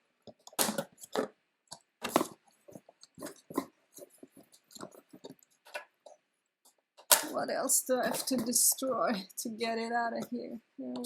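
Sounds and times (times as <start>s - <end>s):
plastic and cardboard packaging crinkling: 2.0s - 6.1s.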